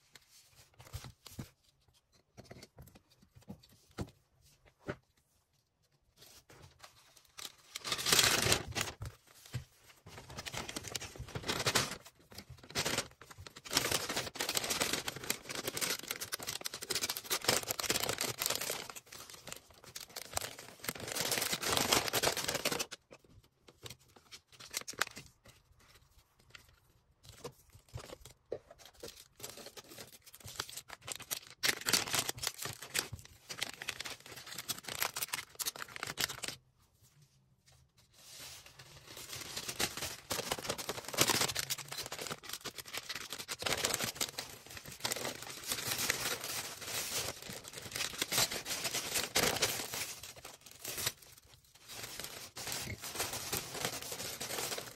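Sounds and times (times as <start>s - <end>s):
plastic packaging crinkling: 7.3s - 9.2s, 10.1s - 23.0s, 27.9s - 36.6s, 39.0s - 54.9s
plastic tearing: 39.4s - 54.9s.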